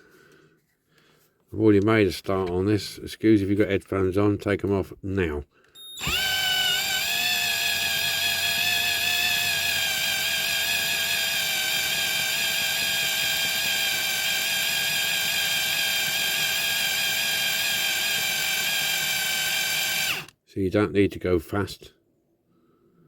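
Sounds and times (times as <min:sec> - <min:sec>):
electric drill whining: 0:05.8 - 0:20.4.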